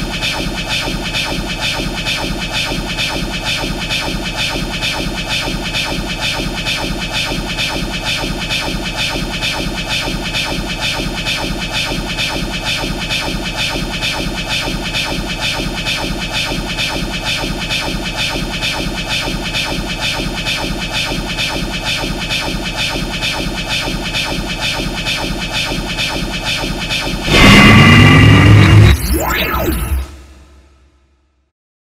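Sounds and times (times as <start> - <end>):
pulsing electronic hum: 26.6 - 30.3.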